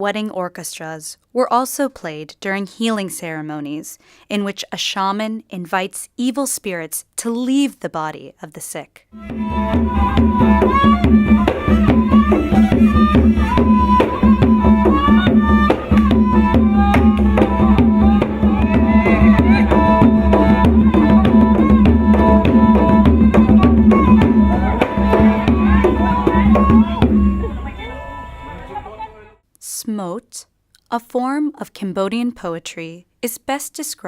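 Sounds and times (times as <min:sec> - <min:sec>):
hand drums beating fast: 0:09.2 - 0:27.7
sliding bending melody: 0:09.2 - 0:29.2.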